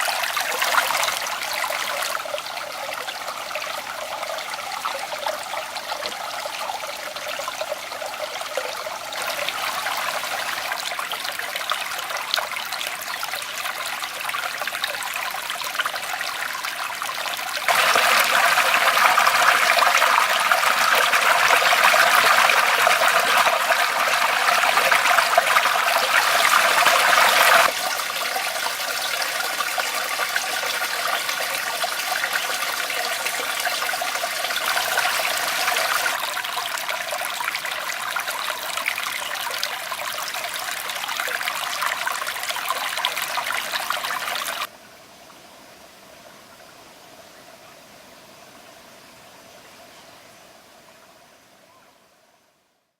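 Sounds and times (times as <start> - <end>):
river water rushing: 16.1 - 39.2.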